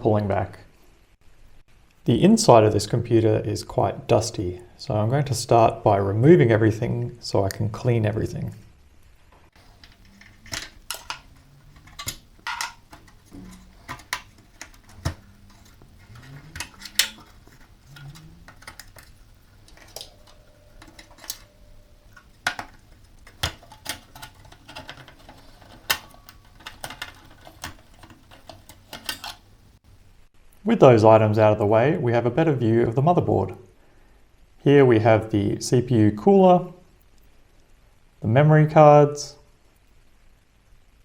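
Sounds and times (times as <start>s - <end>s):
computer parts clicking and knocking: 9.6s - 30.1s.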